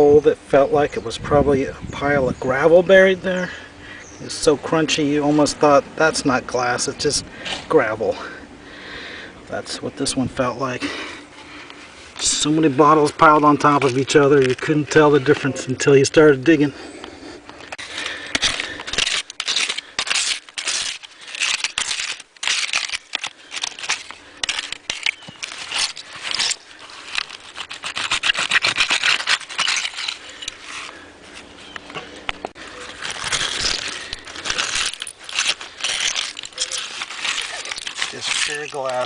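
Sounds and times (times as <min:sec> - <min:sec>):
digging tool scraping: 0:10.4 - 0:16.7, 0:17.6 - 0:39.0.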